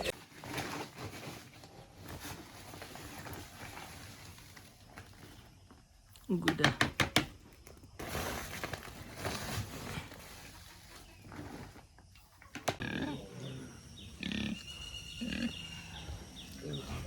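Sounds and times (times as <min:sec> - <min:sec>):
pigs grunting: 0:12.8 - 0:17.0.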